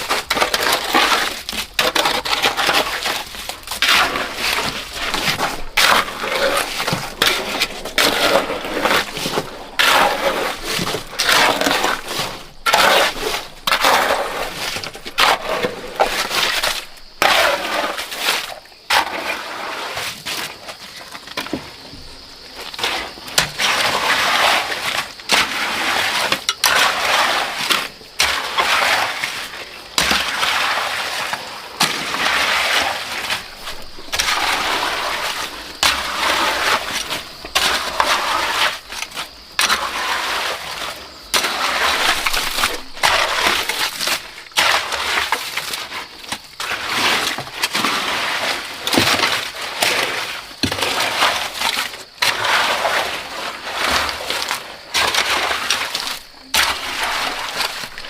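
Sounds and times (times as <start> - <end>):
shovel scraping concrete mix: 0.0 - 58.0.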